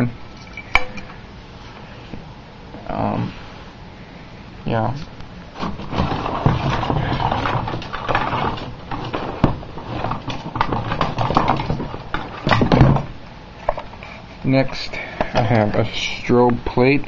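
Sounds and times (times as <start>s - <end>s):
alarm devices knocking and clattering: 5.6s - 13.1s.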